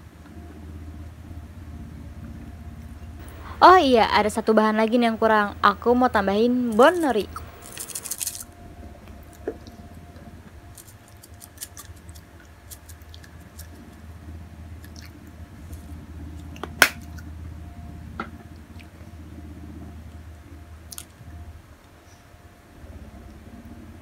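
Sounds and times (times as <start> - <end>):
low steady hum: 0.0 - 24.0
hands handling food and packet: 7.0 - 8.5, 10.7 - 13.9.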